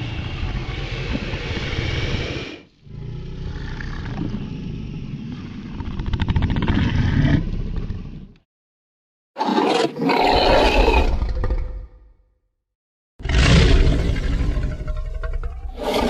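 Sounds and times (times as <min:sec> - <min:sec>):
deep rasping monster roars: 0:00.0 - 0:05.7, 0:09.4 - 0:12.0, 0:13.2 - 0:16.0.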